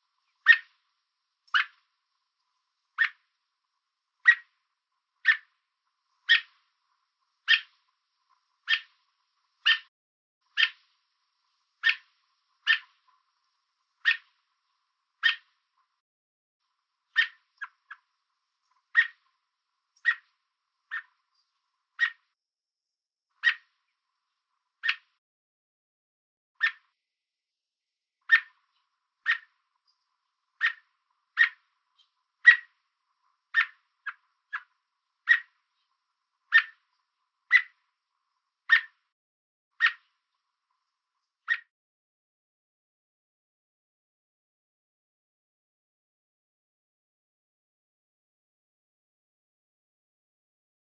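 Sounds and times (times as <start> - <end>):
bird chirping: 0.2 - 0.8, 1.5 - 1.9, 2.9 - 3.3, 4.2 - 4.6, 5.2 - 5.6, 6.2 - 6.7, 7.4 - 7.9, 8.6 - 9.0, 9.6 - 9.9, 10.5 - 10.9, 11.8 - 13.2, 14.0 - 14.4, 15.2 - 15.6, 17.1 - 19.4, 20.0 - 22.4, 23.4 - 24.0, 24.8 - 25.2, 26.6 - 27.0, 28.2 - 32.8, 33.5 - 37.9, 38.6 - 39.1, 39.8 - 40.4, 41.4 - 41.7
robin sharp calls: 0.4 - 0.8, 1.5 - 1.8, 4.2 - 4.6, 6.3 - 6.6, 7.5 - 7.8, 8.6 - 9.0, 9.6 - 9.9, 11.8 - 13.0, 15.2 - 15.5, 17.1 - 18.1, 18.9 - 19.3, 29.3 - 29.6, 30.6 - 31.7, 32.4 - 32.8, 33.5 - 35.6, 36.5 - 36.8, 37.5 - 37.8, 38.7 - 39.0, 39.8 - 40.1.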